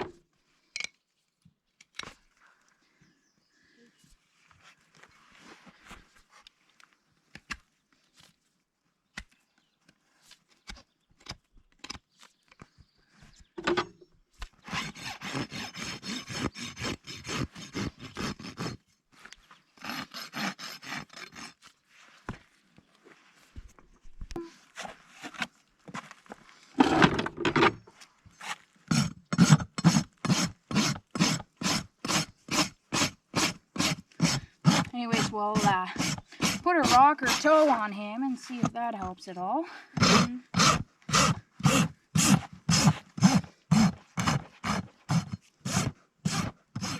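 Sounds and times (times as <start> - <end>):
rasp filing a hoof: 14.4 - 22.4, 28.4 - 46.9.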